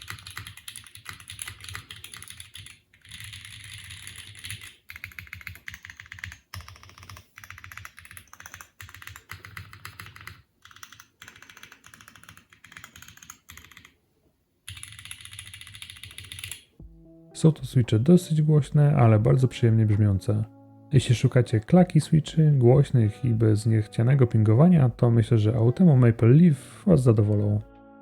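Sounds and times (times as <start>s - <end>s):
mechanical keyboard typing: 0.0s - 14.0s, 14.7s - 16.7s.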